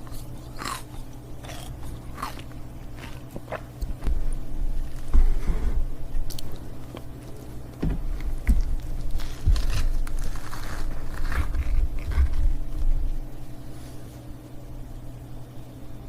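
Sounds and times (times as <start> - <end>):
ice cubes crunching in mouth: 0.0 - 3.7.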